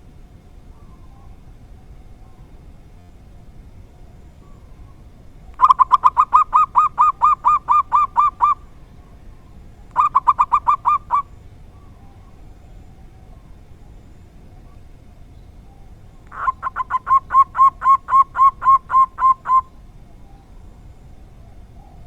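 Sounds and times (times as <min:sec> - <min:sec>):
dove cooing: 0:04.4 - 0:13.9, 0:16.2 - 0:22.0.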